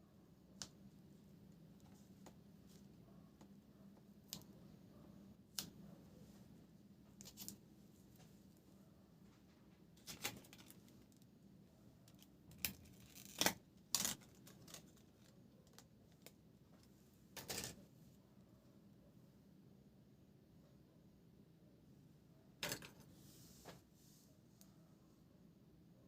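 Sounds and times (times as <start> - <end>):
small parts clicking and scraping: 17.4 - 17.8.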